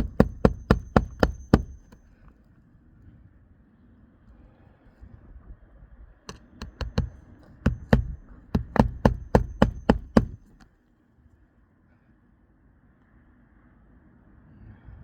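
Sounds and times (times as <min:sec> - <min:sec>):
hammer striking nails: 0:00.0 - 0:02.3, 0:06.3 - 0:10.7.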